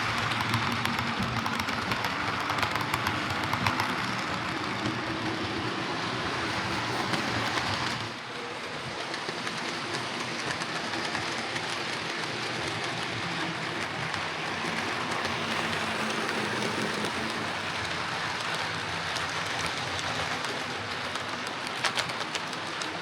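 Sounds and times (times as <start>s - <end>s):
model train motor whirring: 0.0s - 23.0s
wheels clicking over rail joints: 0.0s - 23.0s.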